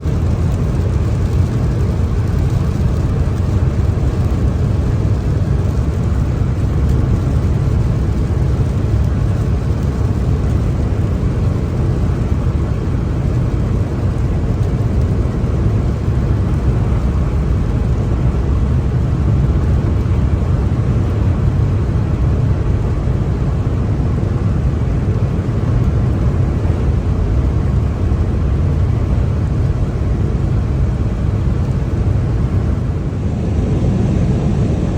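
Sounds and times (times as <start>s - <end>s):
rain: 0.0s - 34.9s
tyre and road noise: 0.0s - 34.9s.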